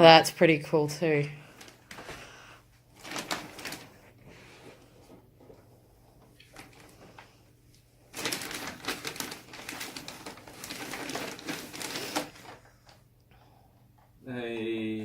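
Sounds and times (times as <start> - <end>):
packaging crinkling and rustling: 1.4 - 2.3, 2.9 - 4.2, 5.0 - 7.4, 8.0 - 13.0.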